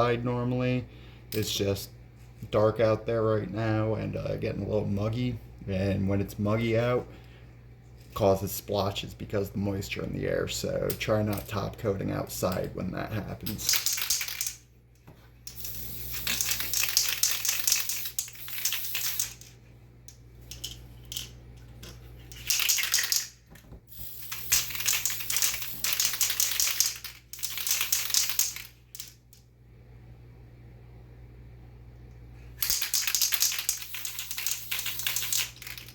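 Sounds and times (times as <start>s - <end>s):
aerosol can spraying: 33.4s - 35.6s.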